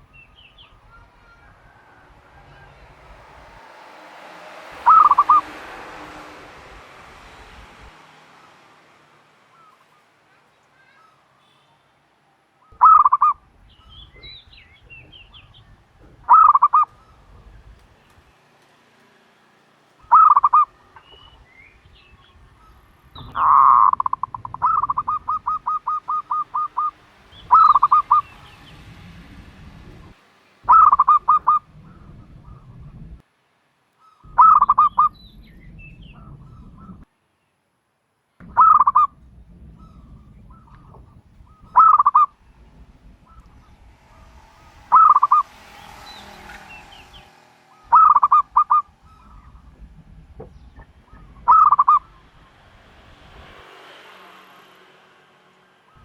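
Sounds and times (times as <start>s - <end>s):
dove cooing: 4.7s - 6.4s, 12.7s - 17.8s, 20.1s - 21.3s, 22.5s - 28.5s, 30.7s - 33.1s, 34.2s - 35.2s, 38.4s - 44.2s, 44.8s - 45.5s, 47.7s - 52.6s.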